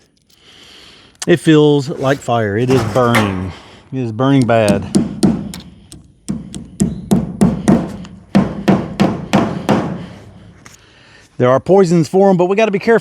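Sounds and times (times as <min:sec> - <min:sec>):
hammer striking nails: 0:02.7 - 0:03.8, 0:04.4 - 0:10.2.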